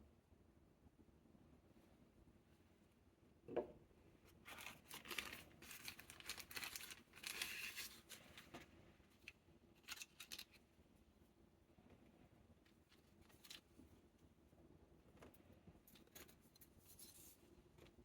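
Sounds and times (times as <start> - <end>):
packaging crinkling and rustling: 4.4 - 10.6.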